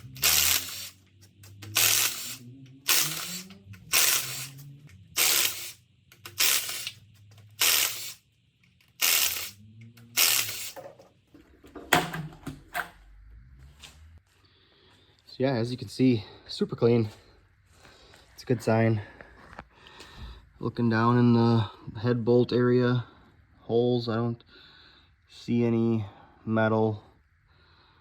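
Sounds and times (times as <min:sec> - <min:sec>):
hand ratchet clicking: 0:00.0 - 0:08.2, 0:08.8 - 0:10.8.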